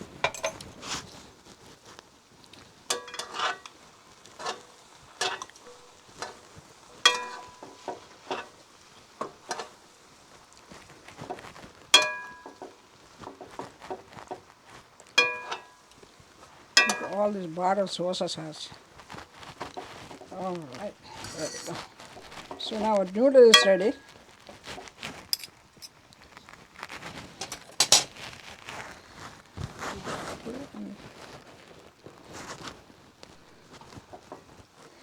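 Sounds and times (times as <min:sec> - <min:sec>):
utensils scraping metal pan: 0:02.9 - 0:03.7, 0:07.1 - 0:08.6, 0:16.8 - 0:17.3, 0:19.7 - 0:24.2, 0:25.2 - 0:25.5, 0:27.3 - 0:28.2.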